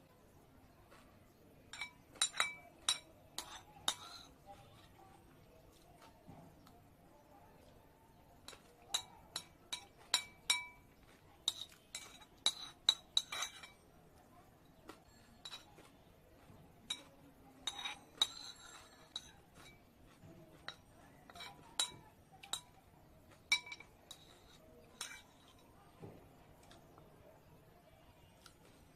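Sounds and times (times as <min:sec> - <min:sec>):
cutlery clinking against a dish: 0:01.6 - 0:05.0, 0:08.4 - 0:13.9, 0:14.8 - 0:26.9.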